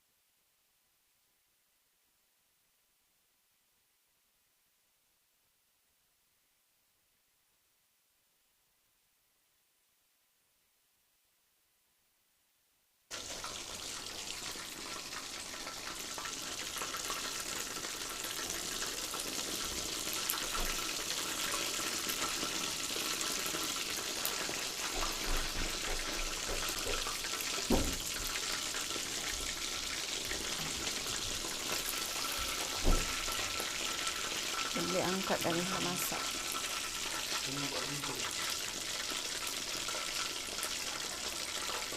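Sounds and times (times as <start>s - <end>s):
chicken sizzling in hot oil: 13.1s - 41.9s.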